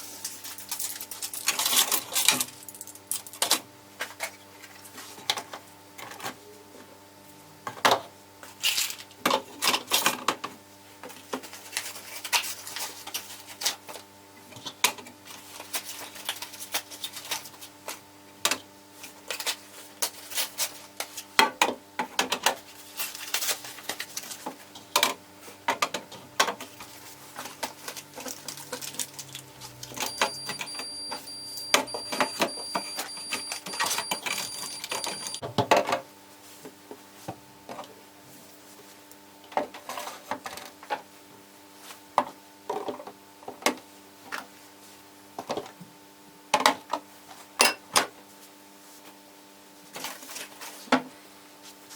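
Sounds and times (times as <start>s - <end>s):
faint steady hum: 27.0s - 35.5s.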